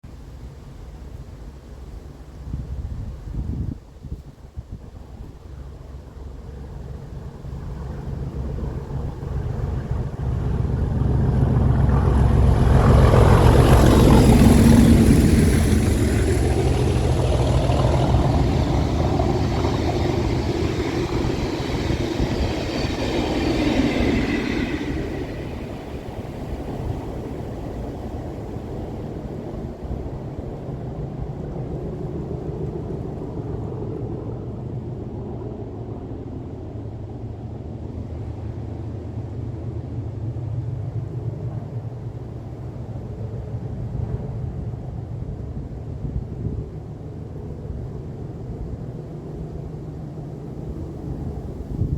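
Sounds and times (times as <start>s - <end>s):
diesel locomotive engines: 5.2s - 31.8s
train rattling by: 5.2s - 31.8s.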